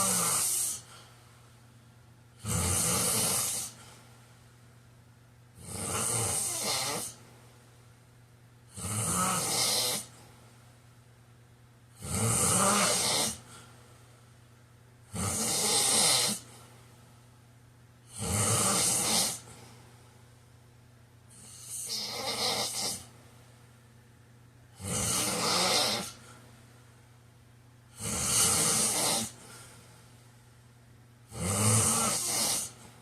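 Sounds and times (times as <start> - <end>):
man snoring: 0.0 - 0.9, 2.4 - 3.8, 5.6 - 7.2, 8.7 - 10.1, 12.0 - 13.5, 15.1 - 16.5, 18.1 - 19.5, 21.3 - 23.1, 24.8 - 26.2, 27.9 - 29.4, 31.3 - 32.8.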